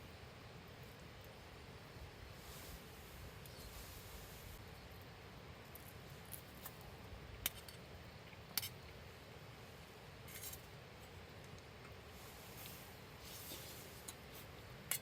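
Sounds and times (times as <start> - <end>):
low steady background noise: 0.0 - 15.0
soft rustle: 2.2 - 4.6, 11.8 - 14.7.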